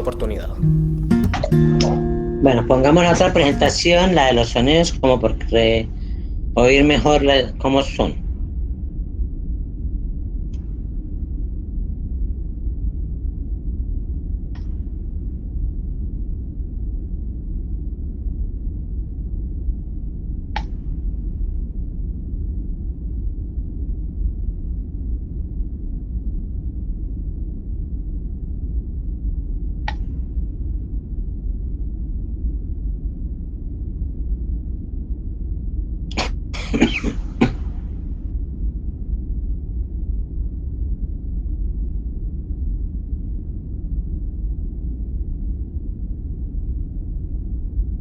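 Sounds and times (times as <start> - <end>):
steady low rumble: 1.8 - 48.0
person coughing: 36.6 - 37.9.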